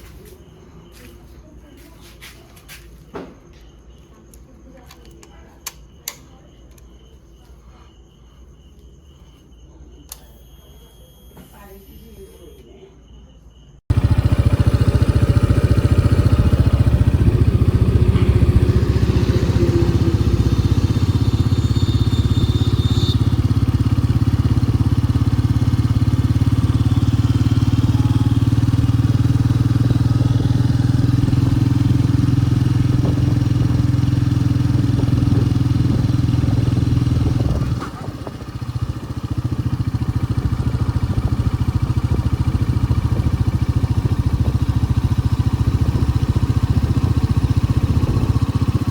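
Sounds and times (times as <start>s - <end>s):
road noise: 13.9s - 38.4s
vehicle engine hum: 13.9s - 48.9s.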